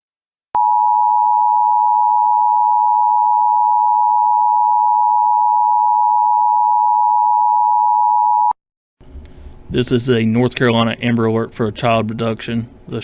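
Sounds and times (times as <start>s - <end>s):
two-tone alarm: 0.6s - 8.6s.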